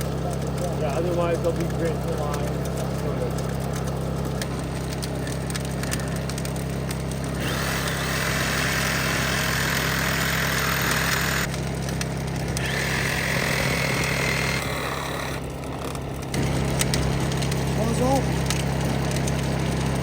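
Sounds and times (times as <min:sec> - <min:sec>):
machine engine running: 0:00.0 - 0:20.0
loud hissing: 0:07.2 - 0:11.6, 0:12.5 - 0:15.6.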